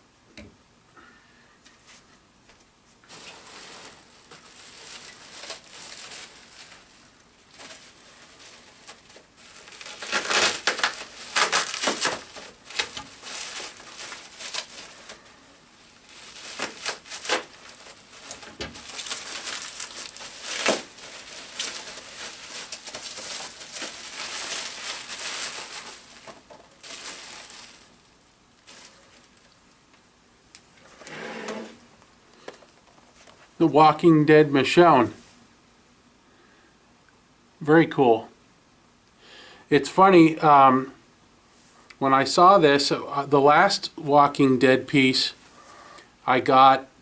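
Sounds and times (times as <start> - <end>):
packing material rustling: 3.0 - 30.0.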